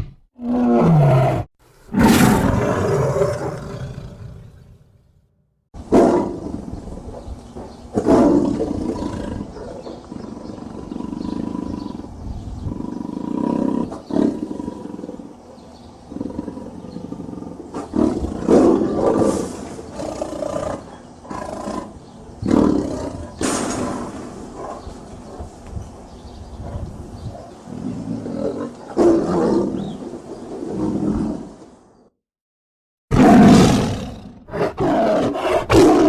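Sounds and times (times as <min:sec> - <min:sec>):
tigers roaring: 0:00.4 - 0:04.9, 0:33.1 - 0:36.0
tigers growling: 0:00.4 - 0:05.0, 0:33.1 - 0:36.0.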